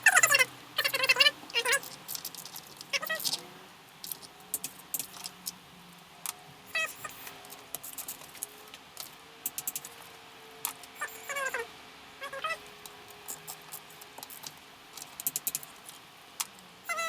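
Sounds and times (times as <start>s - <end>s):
ratchet clicking: 9.5s - 10.0s, 13.3s - 15.8s.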